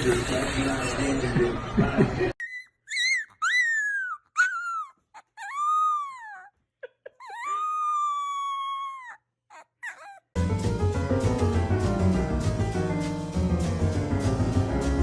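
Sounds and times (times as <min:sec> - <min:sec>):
dog whining and howling: 0:02.4 - 0:06.5, 0:07.1 - 0:10.4
dog yelps: 0:02.4 - 0:10.4
music: 0:10.4 - 0:15.0.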